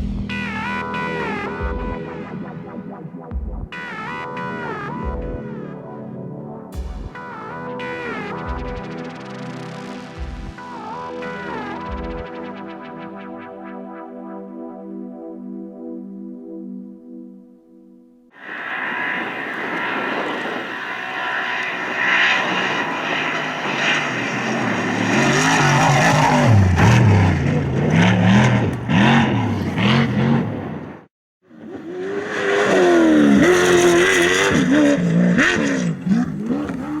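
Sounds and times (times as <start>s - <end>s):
off-road vehicle engine revving: 18.8s - 37.0s.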